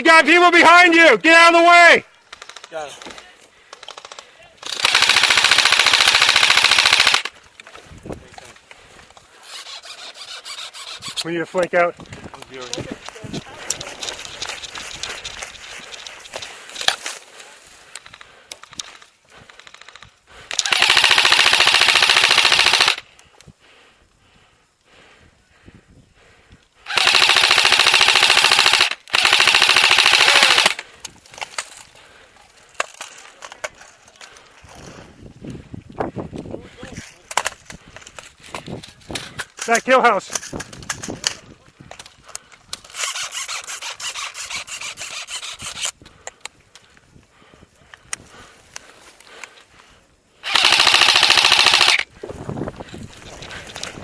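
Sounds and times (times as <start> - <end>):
scattered clicks: 2.2 - 7.7, 17.8 - 23.5, 47.9 - 52.1
airsoft rifle full-auto burst: 4.6 - 7.3, 9.4 - 11.2, 20.5 - 23.0, 26.9 - 30.9, 42.9 - 45.9, 50.4 - 52.1
rustling: 42.3 - 45.9.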